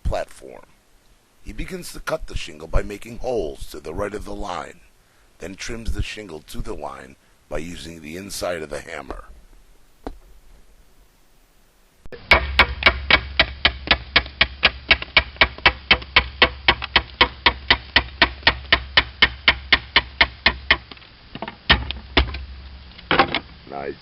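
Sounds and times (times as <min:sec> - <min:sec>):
hammer tapping slate: 0:12.2 - 0:21.0.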